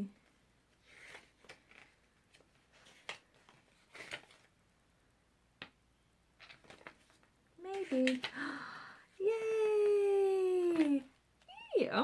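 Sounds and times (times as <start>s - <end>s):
paper rustling: 0.7s - 4.6s, 6.4s - 8.4s, 10.6s - 11.1s.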